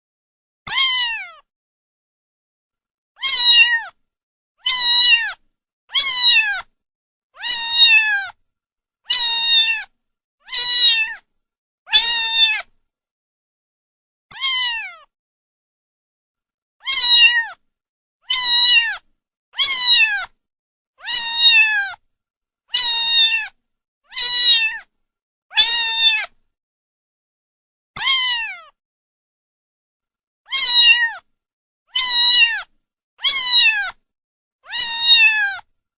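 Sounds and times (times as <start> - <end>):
cat meowing: 0.7 - 1.5, 3.2 - 4.0, 4.6 - 6.8, 7.4 - 8.4, 9.1 - 11.3, 11.9 - 12.7, 14.3 - 15.2, 16.8 - 17.6, 18.3 - 20.4, 21.0 - 22.0, 22.7 - 24.9, 25.5 - 26.4, 28.0 - 28.8, 30.5 - 31.3, 31.9 - 34.0, 34.6 - 35.7.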